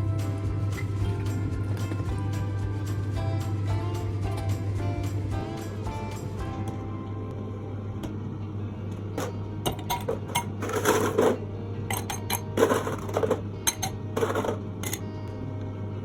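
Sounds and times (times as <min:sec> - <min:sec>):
steady low hum: 0:00.0 - 0:16.0
utensils and cookware clattering: 0:09.2 - 0:15.0.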